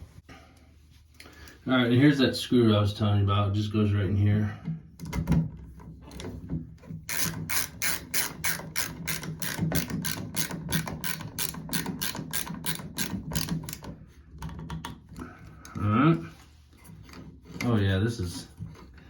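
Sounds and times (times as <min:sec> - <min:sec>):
hand ratchet clicking: 0:07.1 - 0:14.9.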